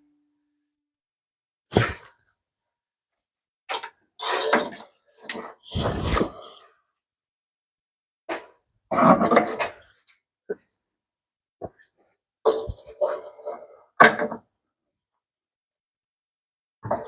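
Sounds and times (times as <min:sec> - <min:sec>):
metallic clanking and scraping: 0:04.2 - 0:05.4.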